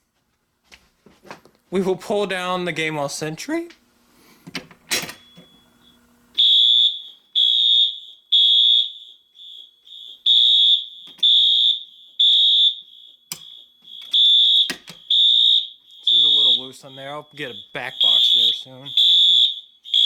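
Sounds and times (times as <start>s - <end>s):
fire alarm horn blasts: 5.3s - 20.0s.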